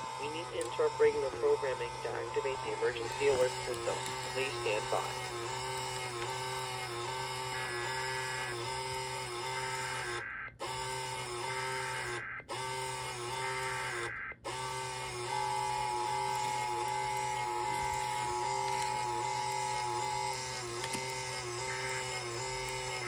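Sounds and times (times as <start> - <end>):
printer clattering: 0.0 - 6.6
data bursts: 0.0 - 23.0.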